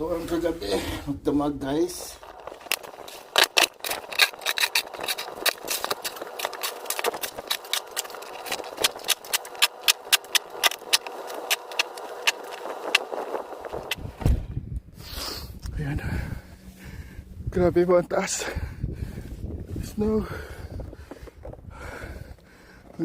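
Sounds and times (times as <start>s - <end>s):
dry snow crunching: 1.6s - 14.2s.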